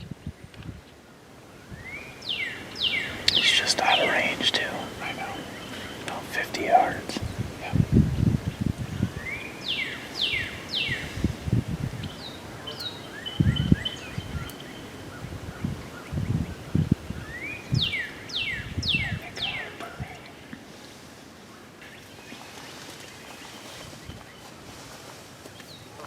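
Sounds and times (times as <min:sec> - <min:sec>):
songbird whistling: 0:09.2 - 0:11.2, 0:12.0 - 0:15.3.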